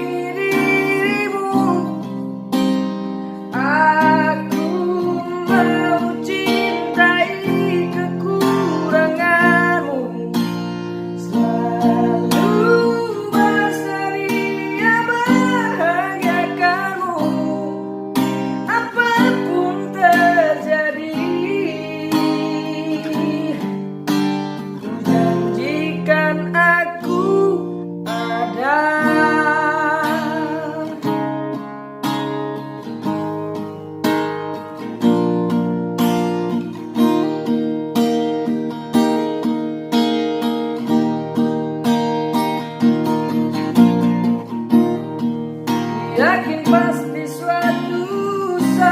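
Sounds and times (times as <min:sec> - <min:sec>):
person singing with vibrato: 0:00.0 - 0:02.5, 0:03.4 - 0:23.9, 0:24.6 - 0:31.4, 0:45.8 - 0:48.9
strummed acoustic guitar: 0:00.0 - 0:48.9.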